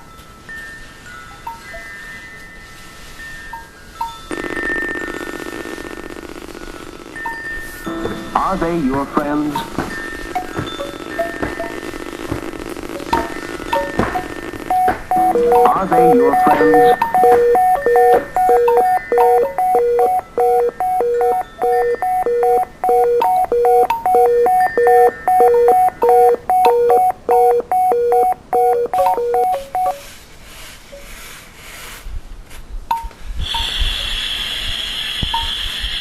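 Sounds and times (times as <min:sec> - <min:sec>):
noise: 0:01.9 - 0:36.0
steady high ringing tone: 0:12.8 - 0:30.0
two-note electronic beeping: 0:14.6 - 0:30.0.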